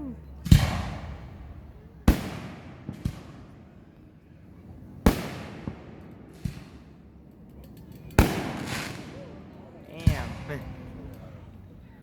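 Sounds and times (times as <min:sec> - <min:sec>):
fireworks booming: 0:00.4 - 0:03.7, 0:08.2 - 0:09.2, 0:10.0 - 0:11.1
small firework pops: 0:02.1 - 0:03.8, 0:05.0 - 0:06.9, 0:07.5 - 0:09.3.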